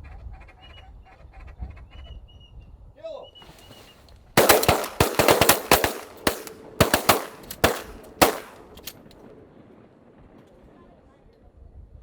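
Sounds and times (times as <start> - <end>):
shotgun blasts: 3.5 - 9.1.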